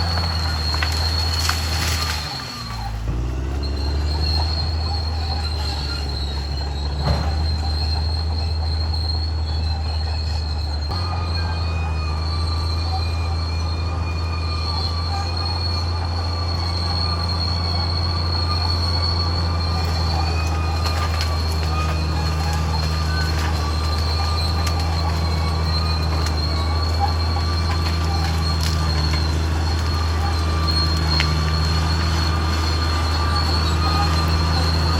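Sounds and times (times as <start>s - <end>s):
bulldozer diesel drone: 0.0s - 34.9s
high-pitched whine and squeal: 0.0s - 34.9s.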